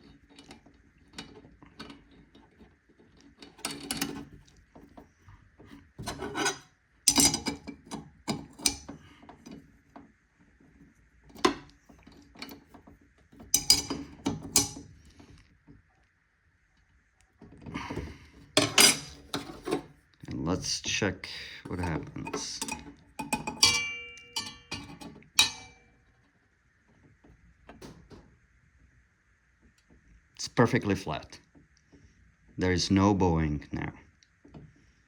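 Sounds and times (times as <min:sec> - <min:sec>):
wrench and nut clicking and clattering: 0:06.4 - 0:08.9, 0:13.6 - 0:14.8.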